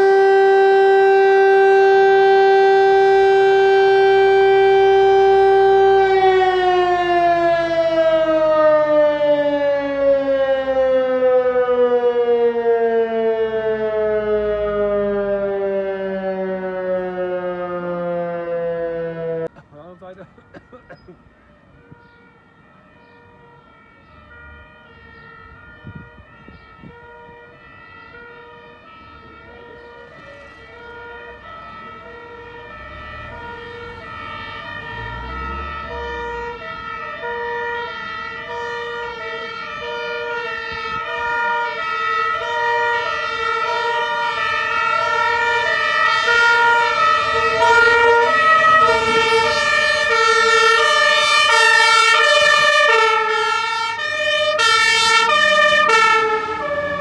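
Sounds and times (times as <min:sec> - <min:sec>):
fire engine two-tone siren: 0:00.0 - 0:57.0.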